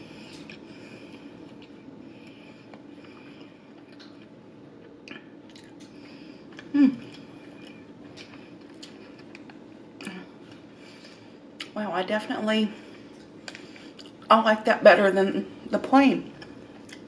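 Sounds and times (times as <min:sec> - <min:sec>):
steady low hum: 0:00.0 - 0:17.0
person chewing with wet mouth clicks: 0:13.2 - 0:14.2.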